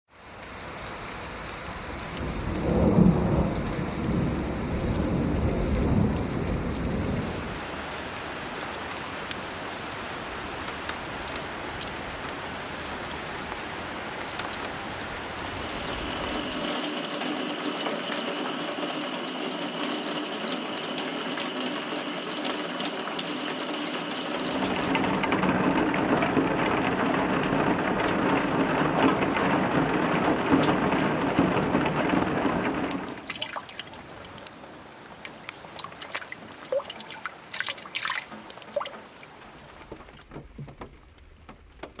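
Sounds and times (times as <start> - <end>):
rain patter on surfaces: 0.1 - 42.0
deep low rumble: 24.5 - 33.1.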